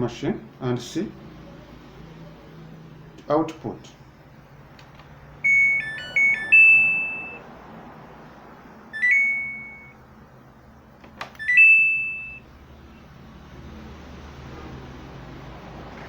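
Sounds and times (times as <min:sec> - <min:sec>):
washing machine chimes: 0:05.4 - 0:07.4, 0:08.9 - 0:10.0, 0:11.3 - 0:12.5.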